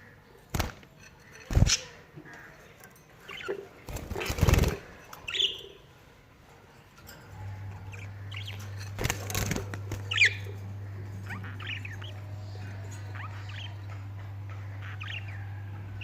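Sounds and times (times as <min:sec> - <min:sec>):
steady low hum: 0:00.0 - 0:16.0
parrot chirping: 0:05.2 - 0:05.8, 0:10.0 - 0:14.2, 0:14.8 - 0:15.6.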